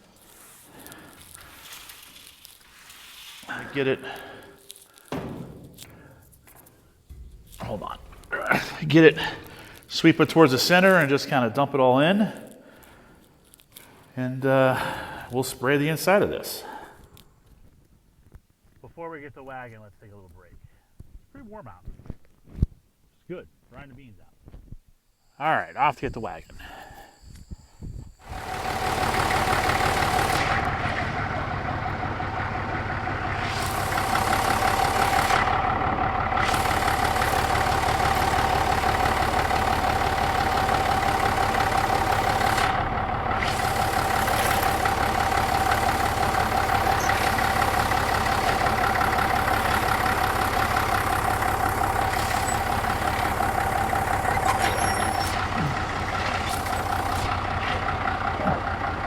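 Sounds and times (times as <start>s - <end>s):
tractor engine running: 3.4s - 11.6s, 28.1s - 59.0s
steady whine: 23.8s - 58.9s.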